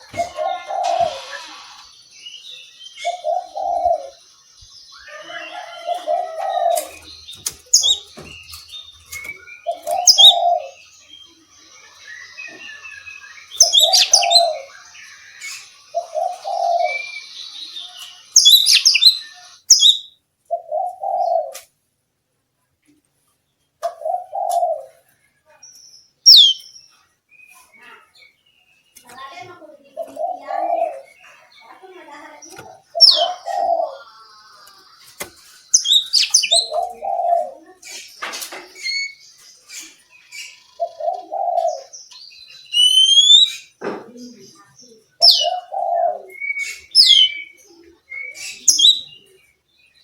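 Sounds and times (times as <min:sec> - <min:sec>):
bird singing whistled notes: 0:07.1 - 0:20.2, 0:26.2 - 0:26.8, 0:33.0 - 0:36.7, 0:42.3 - 0:43.7, 0:46.3 - 0:49.3
low cooing notes: 0:32.9 - 0:34.7.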